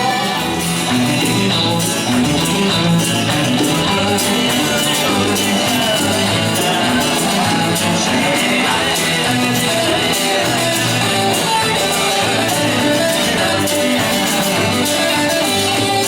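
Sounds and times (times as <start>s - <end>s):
guitar: 0.0s - 16.0s
rock band playing live: 0.0s - 16.0s.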